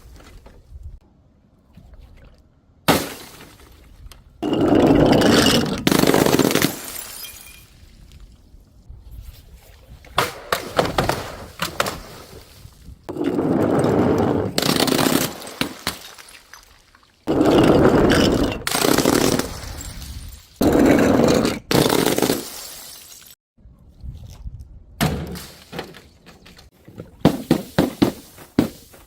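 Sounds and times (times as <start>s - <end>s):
glass shattering and crunching: 4.4s - 8.0s, 14.6s - 17.8s, 18.6s - 20.6s.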